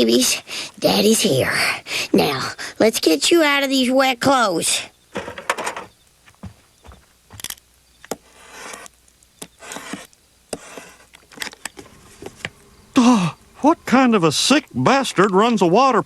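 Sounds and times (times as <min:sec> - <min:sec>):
rustling and scraping: 0:05.1 - 0:12.7.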